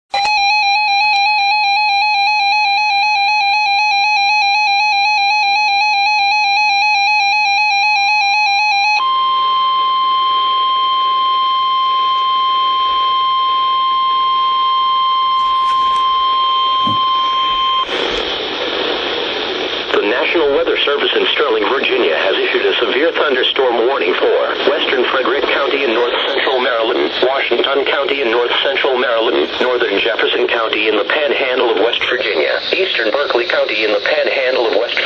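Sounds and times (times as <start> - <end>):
steady warning tone: 0.2 - 35.0
radio hiss: 14.3 - 35.0
warbling two-tone alert signal: 15.2 - 16.2.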